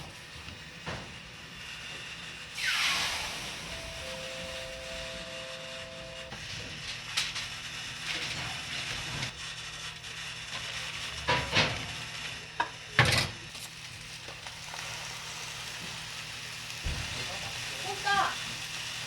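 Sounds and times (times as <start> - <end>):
food sizzling: 2.6 - 6.3, 13.5 - 19.0.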